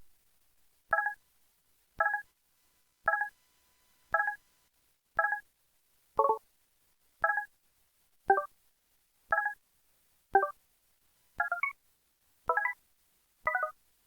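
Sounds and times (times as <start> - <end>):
electronic phone chime: 12.5 - 12.8, 13.5 - 13.7.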